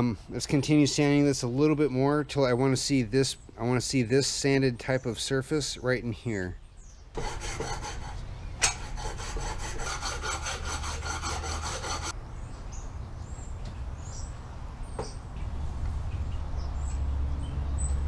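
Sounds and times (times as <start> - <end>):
hand sanding metal: 7.2 - 12.2.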